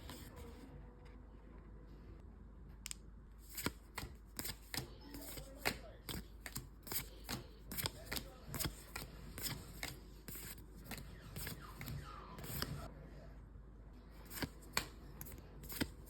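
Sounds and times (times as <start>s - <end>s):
cards snapping: 2.9s - 12.8s, 14.2s - 16.0s
papery rustling: 3.4s - 12.9s.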